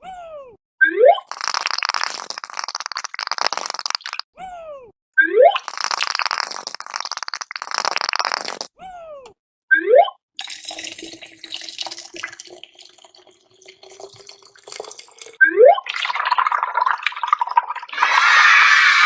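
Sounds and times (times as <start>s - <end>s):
cartoon watery splashing and dripping: 0.8s - 4.3s, 5.2s - 8.7s, 9.9s - 18.1s.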